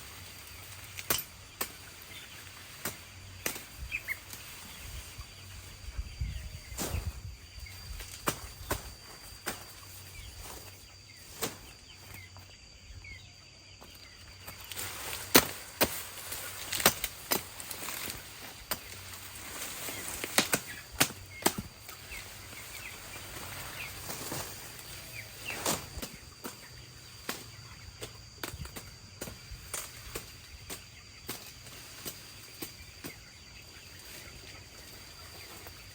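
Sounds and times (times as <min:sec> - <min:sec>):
sharp chopping strikes: 0:15.3 - 0:16.1.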